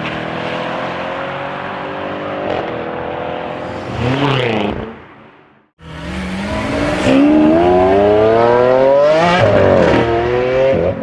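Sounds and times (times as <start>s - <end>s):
car engine accelerating hard: 5.8s - 11.0s.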